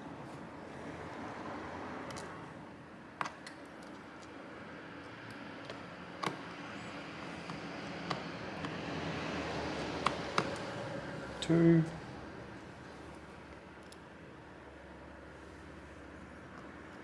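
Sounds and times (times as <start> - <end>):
screwdriver clicks and taps: 5.2 - 6.6, 7.2 - 8.9, 9.8 - 10.7.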